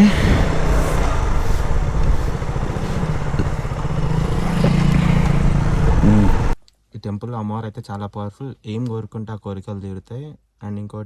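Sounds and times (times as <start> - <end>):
motorcycle engine running: 0.0 - 6.6
wind rushing over microphone: 0.0 - 6.6.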